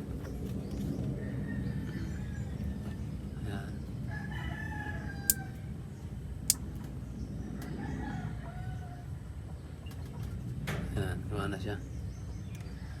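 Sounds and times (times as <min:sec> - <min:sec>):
rooster crowing: 0:01.2 - 0:03.0, 0:04.1 - 0:05.7, 0:07.6 - 0:09.2.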